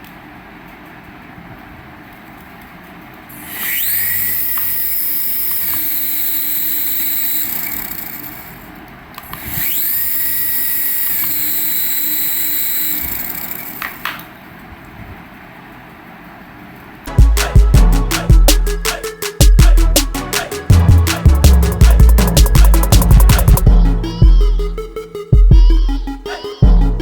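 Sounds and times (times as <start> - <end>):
toy electric motor whine: 3.3 - 14.2.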